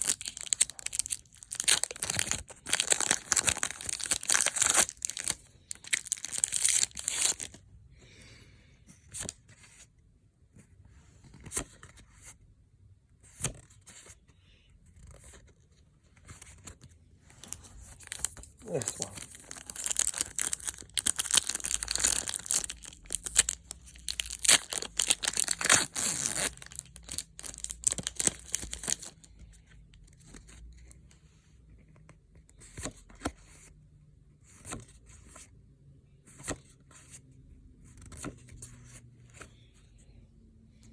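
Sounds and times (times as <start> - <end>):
foil wrapper tearing and crinkling: 0.0 - 7.5, 18.0 - 29.1.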